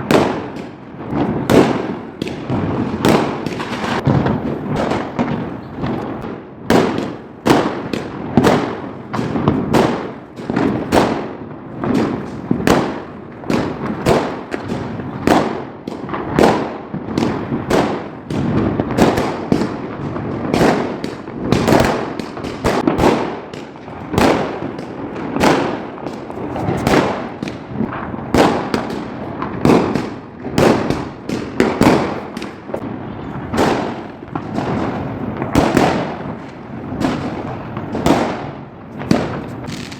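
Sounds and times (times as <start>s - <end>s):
firecrackers bursting: 0.0s - 39.9s.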